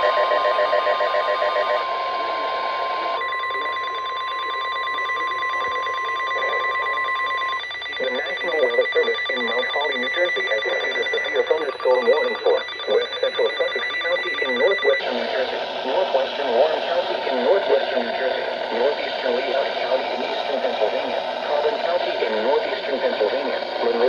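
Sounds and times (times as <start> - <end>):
warning alarm tone: 0.0 - 24.0
automated voice speaking: 8.0 - 24.0.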